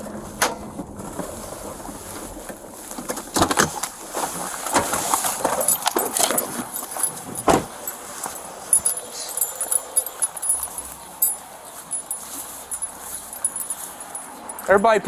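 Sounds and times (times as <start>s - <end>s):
keys and metal gear jingling: 4.4s - 15.0s.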